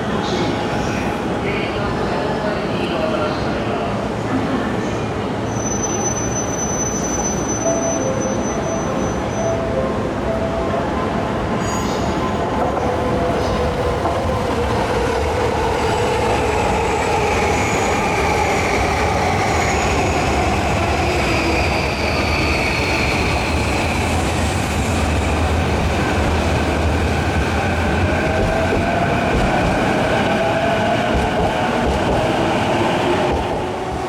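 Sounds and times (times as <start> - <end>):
train wheels rumbling on rail: 11.9 - 34.0.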